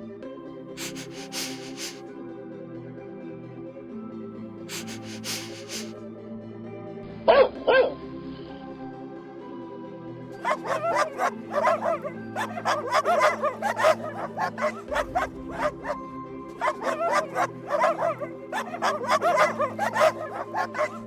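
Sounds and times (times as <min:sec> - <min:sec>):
background music: 0:00.0 - 0:21.0
dog barking: 0:00.8 - 0:02.0, 0:04.7 - 0:05.9, 0:07.2 - 0:08.0, 0:10.4 - 0:21.0.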